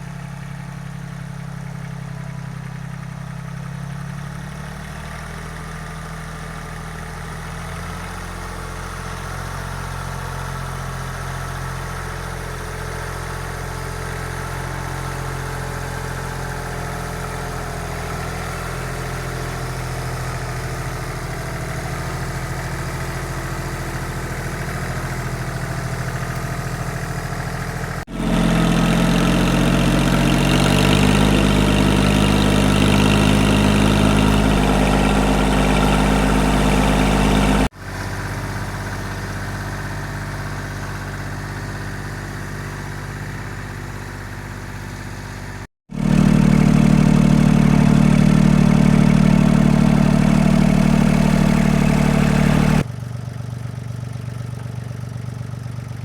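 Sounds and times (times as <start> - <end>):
tractor diesel engine running: 5.2 - 56.0.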